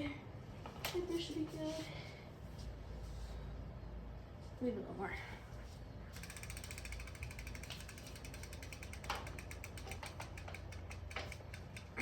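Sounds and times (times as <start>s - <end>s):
bicycle freehub ticking: 6.1s - 12.0s.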